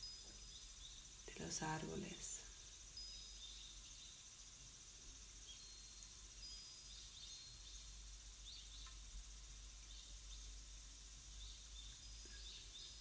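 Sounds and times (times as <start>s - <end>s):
steady hiss: 0.0s - 13.0s
faint birdsong: 11.3s - 13.0s.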